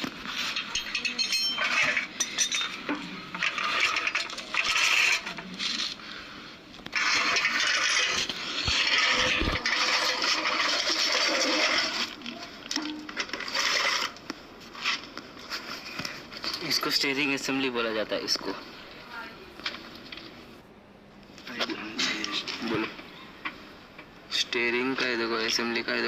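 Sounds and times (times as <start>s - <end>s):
metal scraping: 0.0s - 6.0s, 6.9s - 16.9s
sharp metal clinks: 0.6s - 2.8s.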